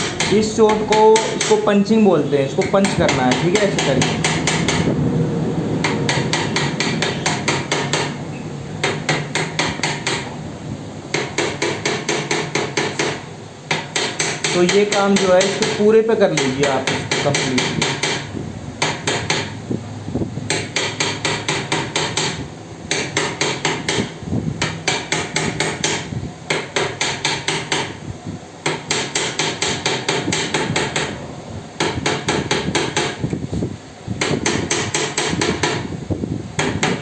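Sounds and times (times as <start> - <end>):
rapid metal-on-metal taps: 0.0 - 1.7, 2.6 - 4.9, 5.8 - 8.2, 8.8 - 10.3, 11.1 - 19.5, 20.5 - 28.0.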